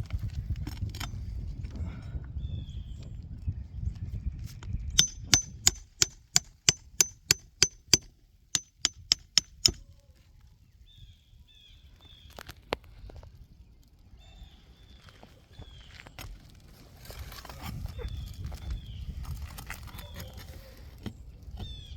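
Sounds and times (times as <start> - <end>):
hammer striking metal: 5.0 - 9.8.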